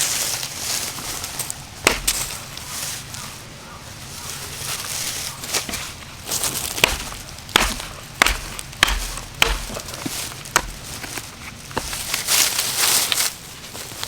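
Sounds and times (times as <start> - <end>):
sharp knocks with dull thuds: 1.8 - 2.4, 6.8 - 12.2.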